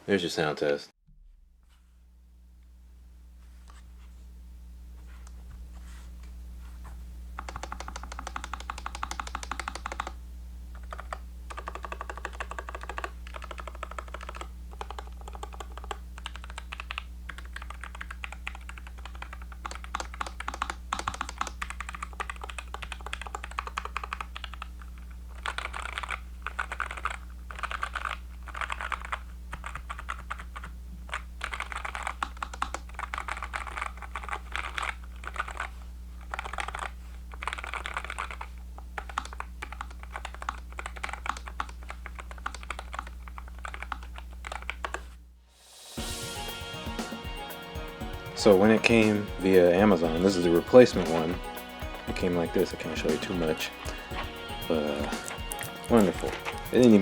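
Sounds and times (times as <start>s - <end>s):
mechanical keyboard typing: 7.4s - 10.2s, 10.8s - 45.0s, 48.7s - 57.0s.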